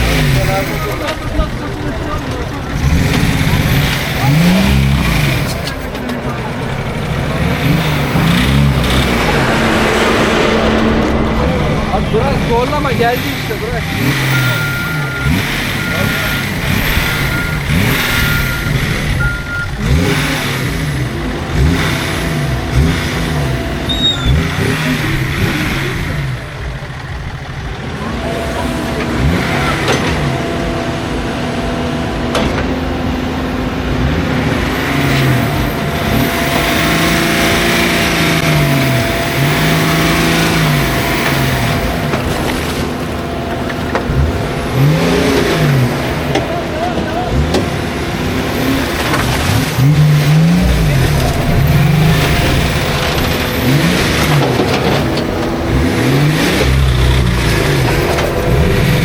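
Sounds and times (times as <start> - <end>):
off-road engine revving: 0.0 - 59.0
short beeps: 14.0 - 19.8.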